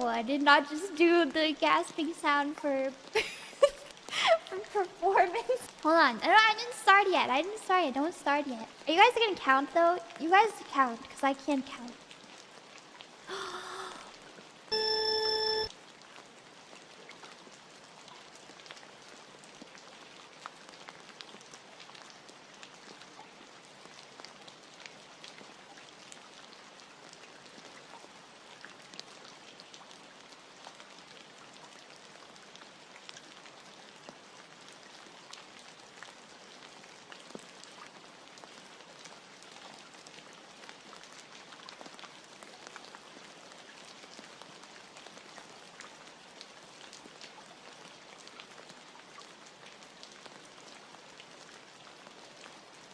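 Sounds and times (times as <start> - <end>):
steady rain patter: 0.0 - 52.9
faint drips: 2.9 - 5.9
short electronic tone: 14.7 - 15.7.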